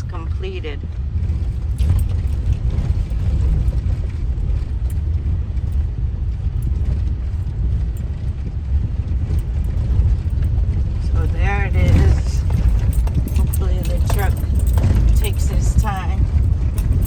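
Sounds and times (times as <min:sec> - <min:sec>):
car engine and tyres on road: 0:00.0 - 0:17.0.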